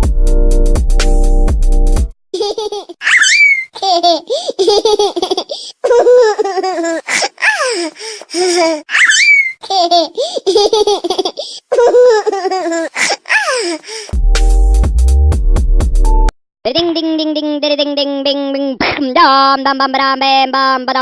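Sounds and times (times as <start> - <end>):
electronic music with bass beat: 0.0 - 2.1, 14.2 - 16.3
high-pitched voice laughing: 2.4 - 13.9, 16.7 - 18.0.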